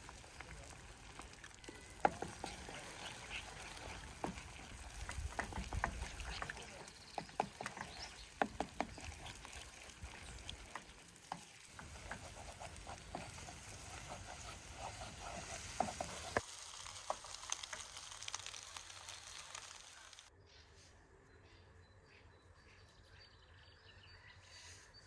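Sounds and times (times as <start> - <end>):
food sizzling in a pan: 0.0 - 20.3.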